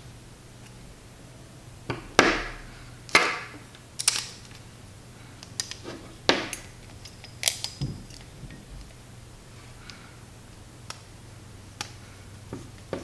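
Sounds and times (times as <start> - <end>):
tools and frame parts clacking: 2.2 - 4.7, 5.4 - 9.0.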